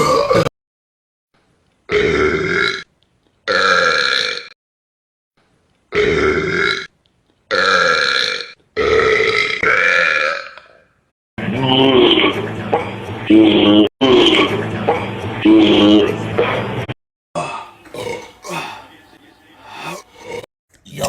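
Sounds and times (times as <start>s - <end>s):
man belching loudly: 11.5s - 16.2s, 17.4s - 21.0s.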